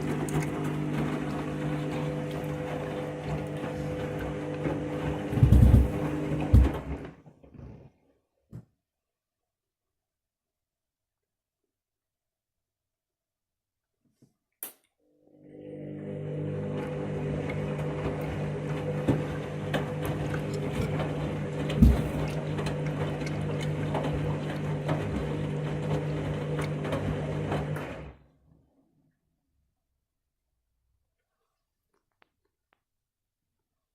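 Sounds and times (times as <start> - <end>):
water noise: 0.0 - 6.7, 17.3 - 27.8
washing machine motor hum: 0.0 - 8.0, 15.0 - 28.8.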